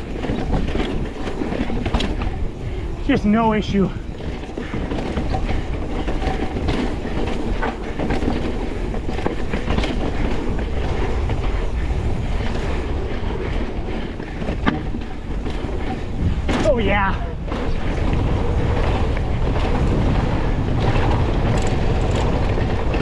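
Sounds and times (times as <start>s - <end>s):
low rumble: 0.0s - 23.0s
mountain bike rattling over roots: 0.0s - 23.0s.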